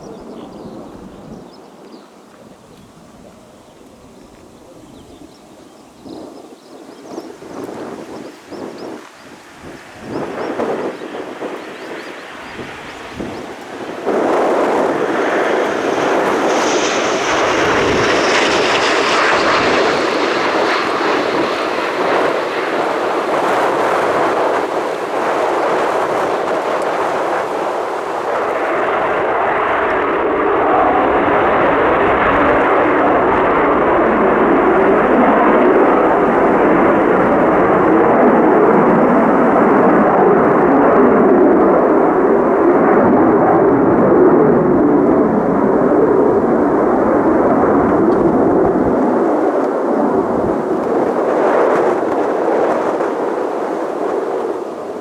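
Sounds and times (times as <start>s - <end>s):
jet aircraft flying past: 0.0s - 55.0s.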